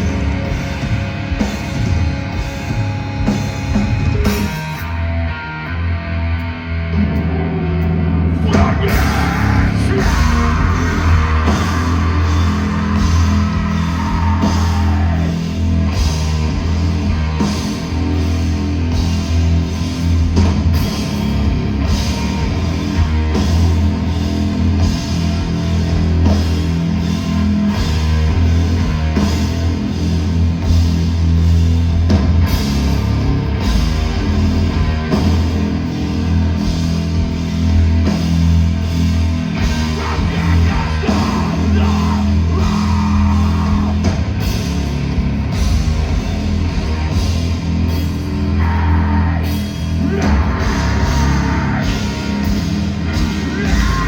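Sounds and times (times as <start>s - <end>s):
distorted guitars and bass: 0.0s - 54.0s
heavy drums: 0.0s - 54.0s
person singing: 8.4s - 15.4s, 39.8s - 44.1s, 48.6s - 54.0s.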